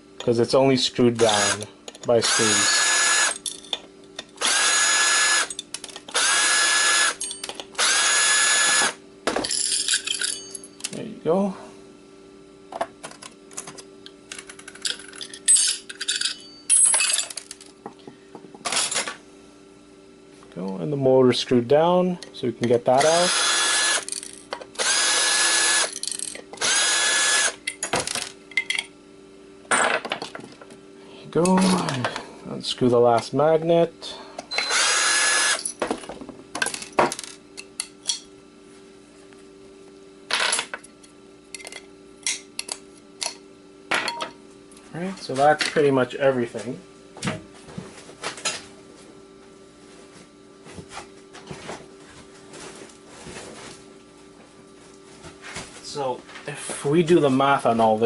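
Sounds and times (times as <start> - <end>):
small metal parts clinking: 9.4 - 10.9, 14.3 - 17.7, 25.9 - 26.4
bright metallic ring: 9.5 - 10.9, 15.2 - 17.2.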